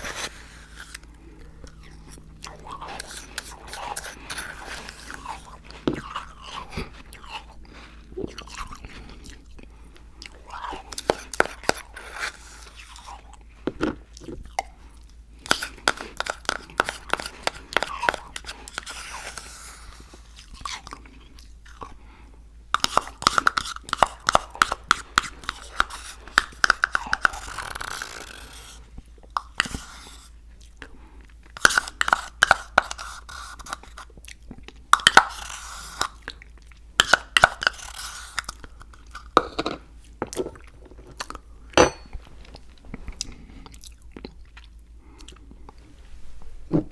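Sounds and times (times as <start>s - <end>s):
chewing crunchy icy slush: 0.0s - 22.2s.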